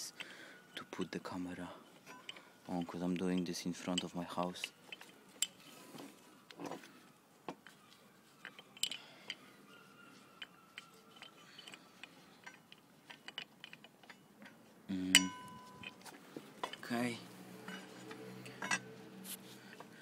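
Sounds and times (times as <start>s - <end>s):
metal parts clicking and clinking: 0.0s - 6.9s, 7.6s - 9.5s, 10.4s - 19.0s.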